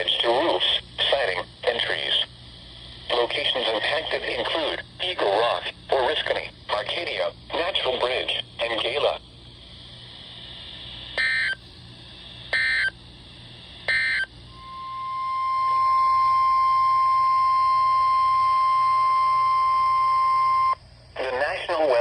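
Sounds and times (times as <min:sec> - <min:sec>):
steady warning alarm tone: 0:10.8 - 0:11.6, 0:12.3 - 0:20.9.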